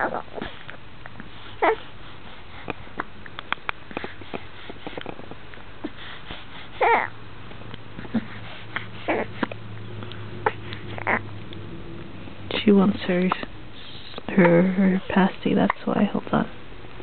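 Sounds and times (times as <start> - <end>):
breathing sounds: 5.8 - 6.9, 8.0 - 11.0.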